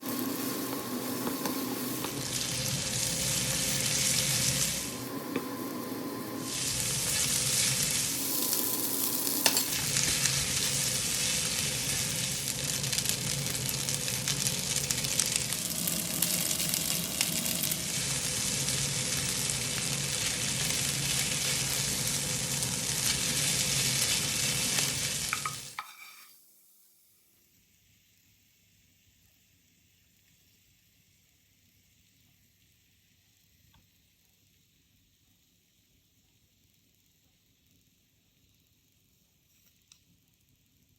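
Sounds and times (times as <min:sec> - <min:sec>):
noodles sizzling in a pan: 0:00.0 - 0:40.9
stirring in a pan: 0:22.7 - 0:26.3.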